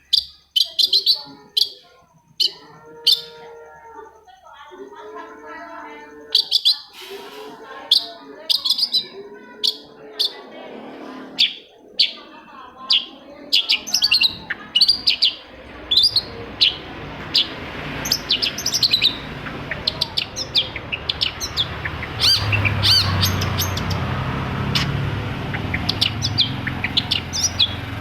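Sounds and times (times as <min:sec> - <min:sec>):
bird chirping and whistling: 0:12.9 - 0:24.1, 0:24.7 - 0:27.9
low hum: 0:14.3 - 0:28.0.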